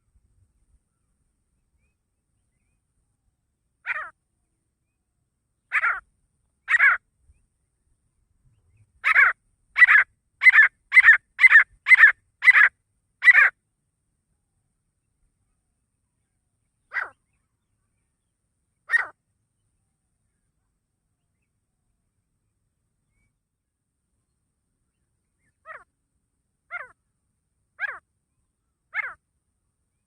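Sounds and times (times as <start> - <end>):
francolin calling harshly: 3.8 - 4.2, 5.7 - 6.0, 6.6 - 7.0, 9.0 - 13.6, 16.9 - 17.3, 18.8 - 19.2, 26.7 - 27.0, 27.8 - 28.0, 28.9 - 29.2.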